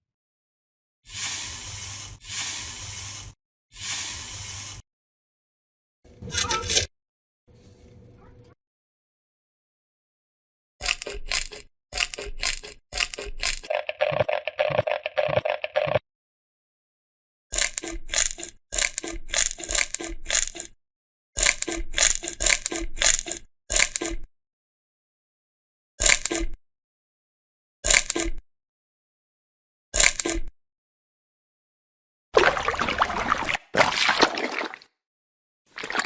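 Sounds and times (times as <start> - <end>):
wet slime squish: 32.4 - 34.9, 35.7 - 36.0.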